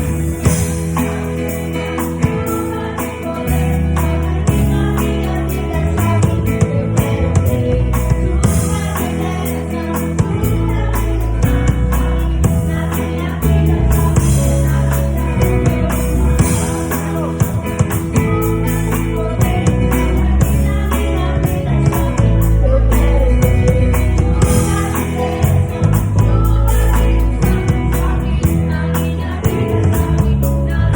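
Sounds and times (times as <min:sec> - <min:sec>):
gospel music with singing: 0:00.0 - 0:30.9.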